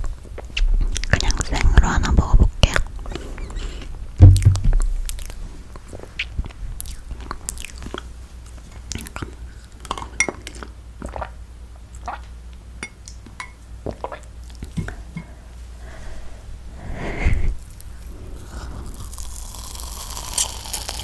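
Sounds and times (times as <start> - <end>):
chewing marshmallow mouth sounds: 0.4 - 12.3, 17.6 - 21.0
loud low thump: 4.2 - 4.9.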